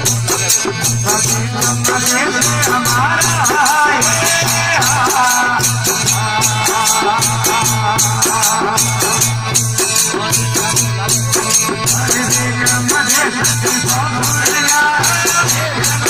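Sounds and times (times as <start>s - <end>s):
jingling percussion rhythm: 0.0s - 16.0s.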